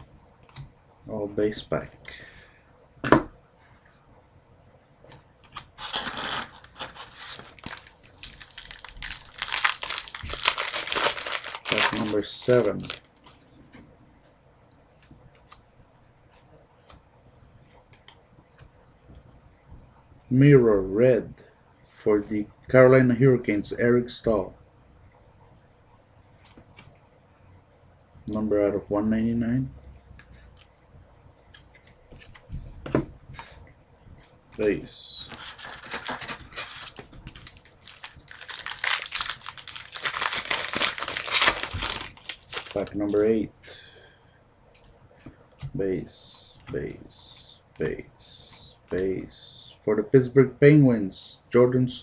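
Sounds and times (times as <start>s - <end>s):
foil wrapper crinkling and tearing: 5.8s - 13.4s, 35.3s - 43.2s.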